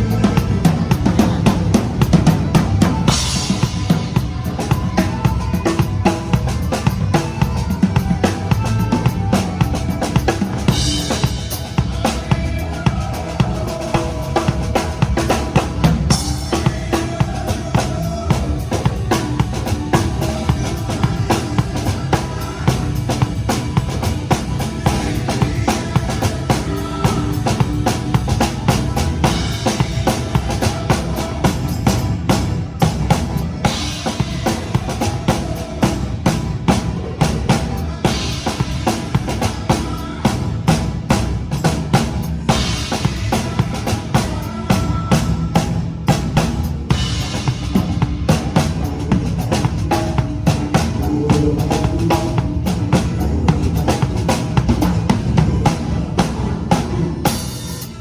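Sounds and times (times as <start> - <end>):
bass drum and snare beat: 0.0 - 57.8
recorded song: 0.0 - 58.0.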